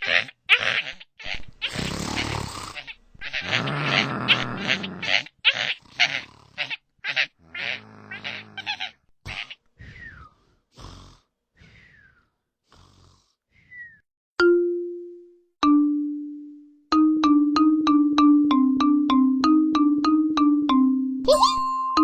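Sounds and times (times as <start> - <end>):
cartoon voices grunting and squealing: 0.0 - 9.7.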